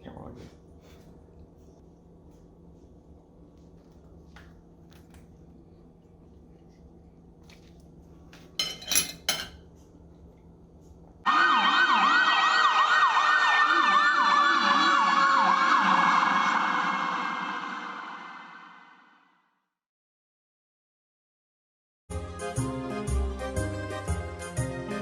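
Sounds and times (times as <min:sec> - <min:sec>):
emergency sirens yelping: 0:11.3 - 0:17.2.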